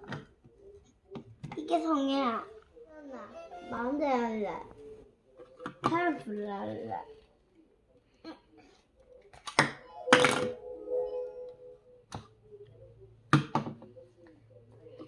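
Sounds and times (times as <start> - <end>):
toy electronic tone: 9.8 - 12.0.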